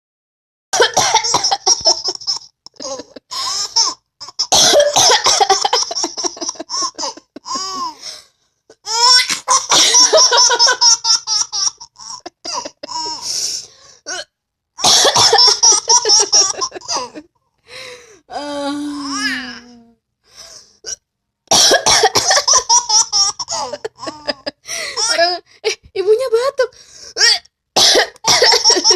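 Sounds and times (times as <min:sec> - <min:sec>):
woman coughing: 0:00.8 - 0:01.7, 0:04.5 - 0:07.9, 0:09.2 - 0:10.6, 0:14.1 - 0:17.2, 0:21.5 - 0:22.6, 0:27.2 - 0:28.9
woman laughing: 0:01.8 - 0:03.4, 0:05.2 - 0:08.0, 0:09.8 - 0:11.0, 0:12.2 - 0:13.2, 0:15.4 - 0:17.3, 0:23.4 - 0:25.9, 0:28.5 - 0:28.9.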